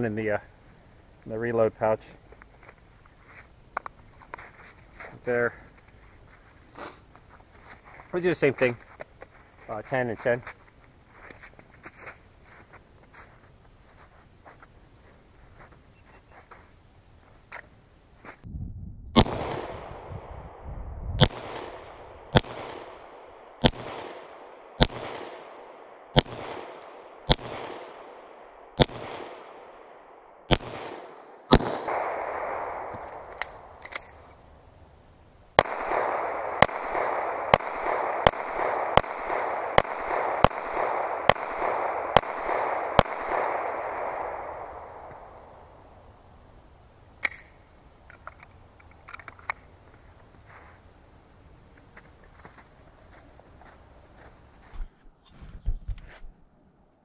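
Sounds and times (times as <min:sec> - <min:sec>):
pistol shots with echo: 0:19.2 - 0:20.6, 0:21.2 - 0:34.2, 0:35.6 - 0:45.8
magazine reload clicks: 0:32.9 - 0:34.4, 0:47.2 - 0:49.6.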